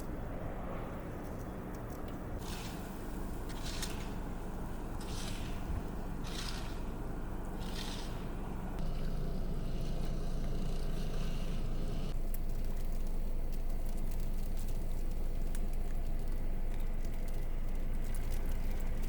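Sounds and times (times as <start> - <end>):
vehicle engine running: 0.0 - 19.0
fine crackling ticks: 12.1 - 19.0.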